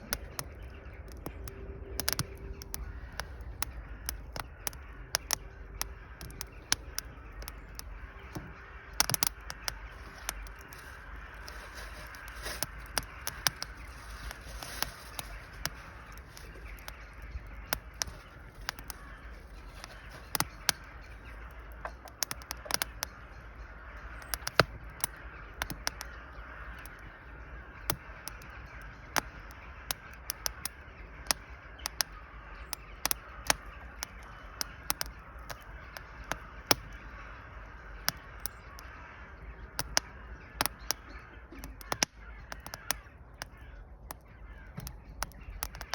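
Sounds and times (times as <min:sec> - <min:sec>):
fire crackling and popping: 0:00.0 - 0:45.9
fire hissing: 0:09.0 - 0:21.5.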